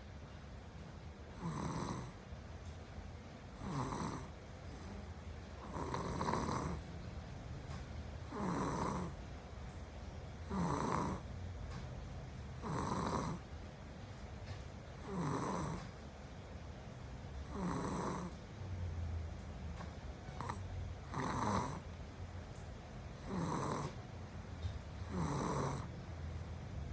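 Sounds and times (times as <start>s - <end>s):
child snoring: 1.3s - 2.2s, 3.6s - 6.9s, 8.2s - 9.2s, 10.4s - 11.3s, 12.6s - 13.4s, 15.0s - 15.9s, 17.4s - 18.4s, 20.3s - 21.8s, 23.2s - 24.0s, 25.0s - 25.9s
quiet breathing: 3.5s - 6.9s, 17.4s - 18.4s, 19.8s - 21.9s, 23.1s - 26.9s.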